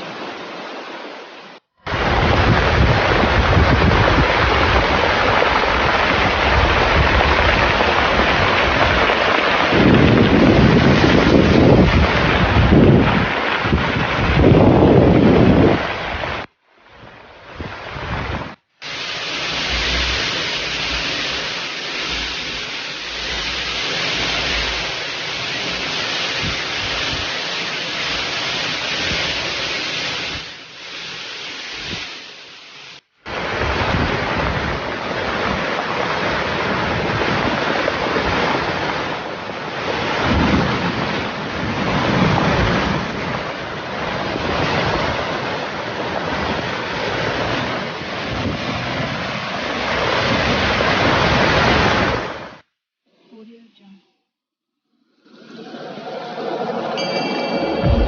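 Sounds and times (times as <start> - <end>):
rushing water: 0.0 - 52.6
wind buffeting microphone: 1.9 - 18.6.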